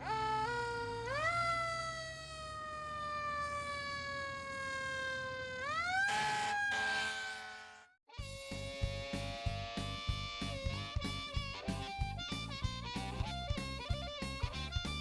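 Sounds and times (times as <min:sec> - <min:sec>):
siren-like pitched tone: 0:00.0 - 0:11.9.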